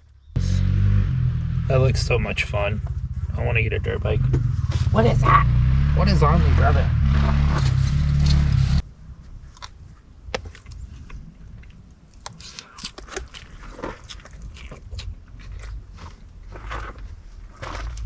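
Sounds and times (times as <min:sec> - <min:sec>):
loud low rumble: 0:00.4 - 0:09.1
crunchy rustles: 0:07.5 - 0:18.0.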